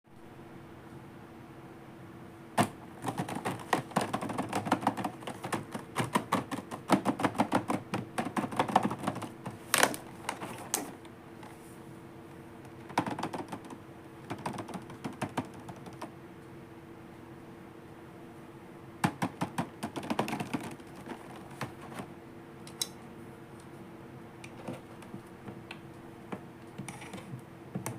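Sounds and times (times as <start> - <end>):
plastic pieces clicking and tapping: 2.6 - 10.9, 12.7 - 16.1, 19.0 - 22.1.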